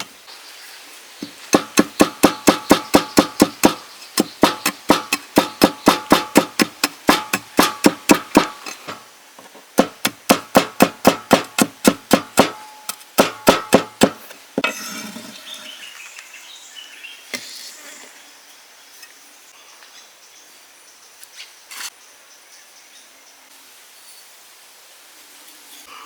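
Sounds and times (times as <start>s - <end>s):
birds: 0.0s - 6.4s, 14.9s - 23.5s
knife chopping on wooden board: 1.2s - 9.0s, 9.8s - 14.2s.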